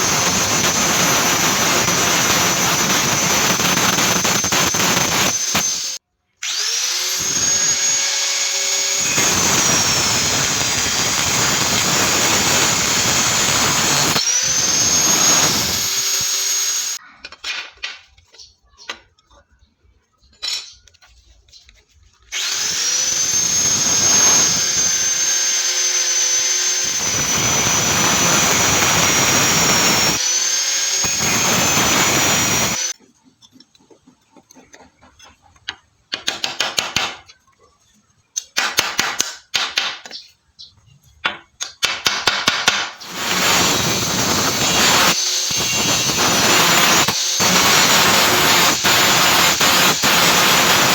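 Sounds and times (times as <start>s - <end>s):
angle grinder grinding iron: 0.0s - 17.0s, 22.3s - 33.0s, 43.0s - 50.9s.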